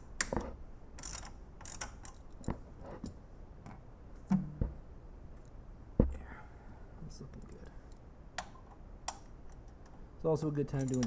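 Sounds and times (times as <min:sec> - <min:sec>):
allen key clicking on metal: 0:10.8 - 0:11.0.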